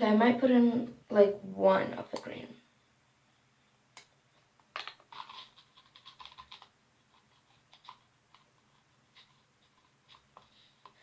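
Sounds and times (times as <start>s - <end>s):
small scratchy crackly sounds: 4.3s - 11.0s.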